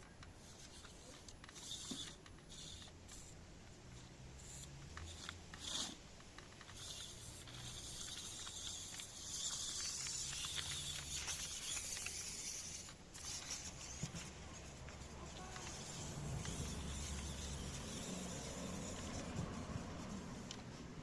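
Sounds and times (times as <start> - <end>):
toy car driving hiss: 0.0 - 21.0
small clicks: 4.0 - 20.7.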